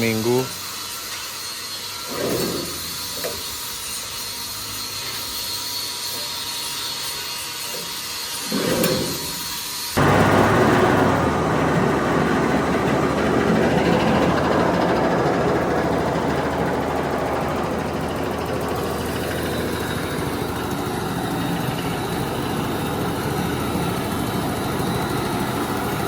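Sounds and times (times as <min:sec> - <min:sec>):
corn sheller engine running: 0:10.0 - 0:26.0.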